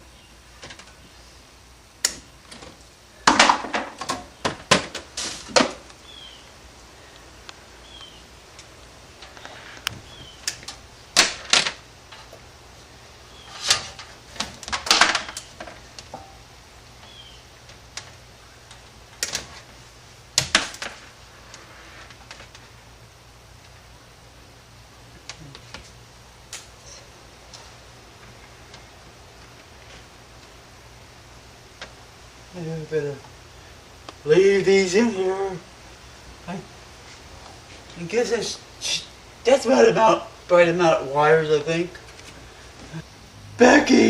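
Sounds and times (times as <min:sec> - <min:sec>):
wires being handled: 0:02.0 - 0:22.9.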